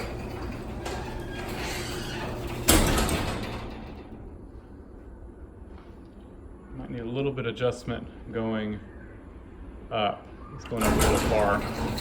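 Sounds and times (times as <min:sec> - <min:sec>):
garage door opener humming: 0:00.0 - 0:04.7, 0:10.3 - 0:12.0.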